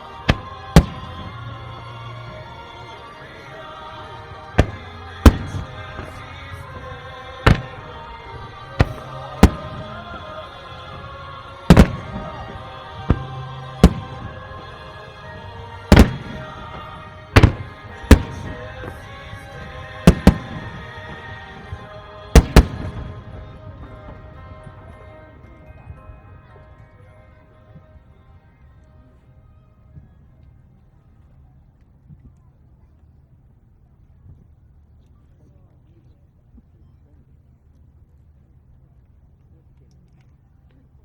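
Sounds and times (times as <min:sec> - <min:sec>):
music: 0:00.0 - 0:41.0
firework shells bursting: 0:00.3 - 0:02.4, 0:04.2 - 0:25.6.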